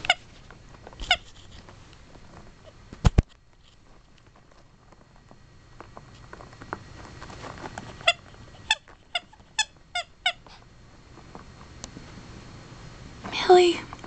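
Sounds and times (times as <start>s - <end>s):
high-pitched animal squeaks: 8.0s - 10.5s.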